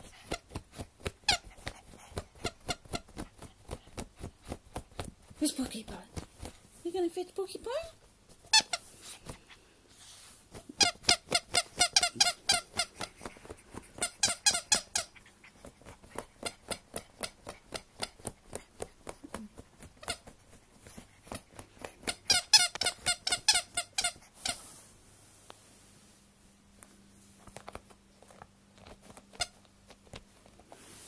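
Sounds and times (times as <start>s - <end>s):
dog scratching at a sheet: 0.0s - 6.7s
squeaky toy squeaking: 1.2s - 1.5s, 8.4s - 8.9s, 10.7s - 13.1s, 13.9s - 15.2s, 20.0s - 20.3s, 22.0s - 24.6s.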